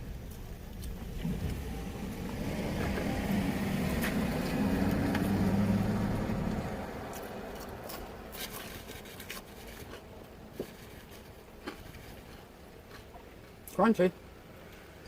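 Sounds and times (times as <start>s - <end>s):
car engine humming: 0.0s - 10.5s.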